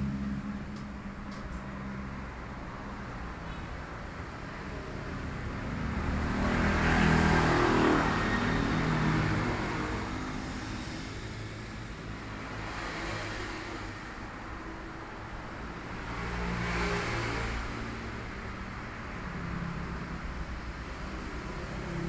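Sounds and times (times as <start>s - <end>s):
vehicle engine passing by: 5.8s - 14.0s.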